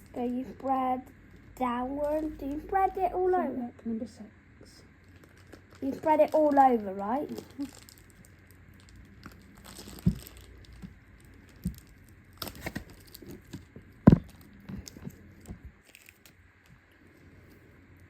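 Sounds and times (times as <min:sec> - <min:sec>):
slime being pressed by hand: 0:09.6 - 0:15.1.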